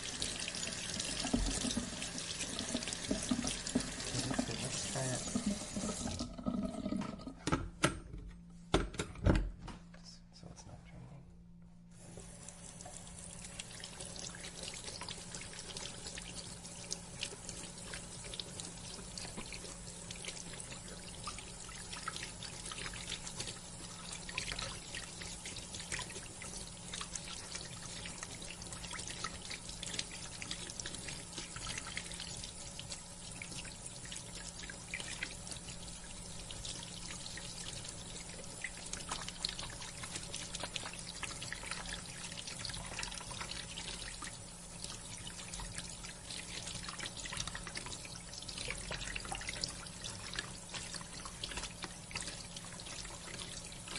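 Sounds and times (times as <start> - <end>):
faucet running into sink: 0.0 - 7.5.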